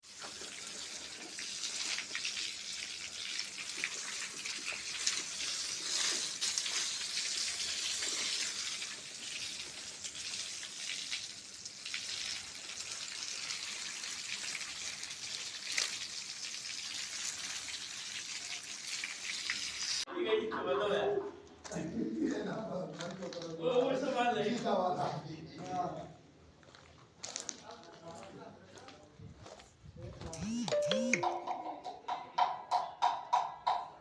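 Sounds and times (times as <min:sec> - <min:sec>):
water hissing and splashing: 0:00.0 - 0:20.0.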